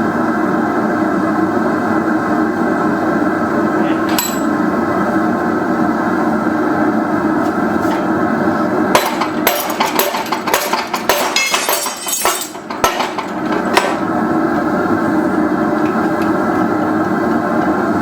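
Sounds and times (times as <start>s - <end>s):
hammer striking steel on anvil: 4.1s - 4.6s, 8.9s - 14.0s.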